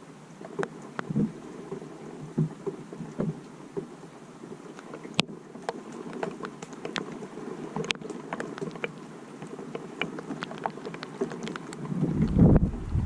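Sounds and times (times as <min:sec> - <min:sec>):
raindrops ticking on hard surface: 0:00.0 - 0:12.7
steady rain hiss: 0:00.0 - 0:13.0.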